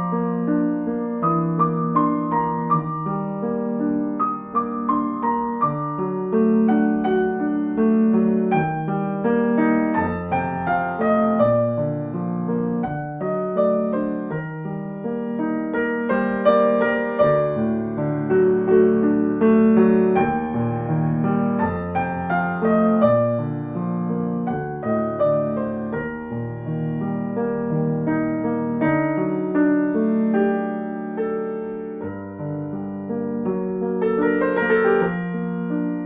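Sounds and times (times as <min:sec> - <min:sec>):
gentle solo piano: 0:00.0 - 0:36.0.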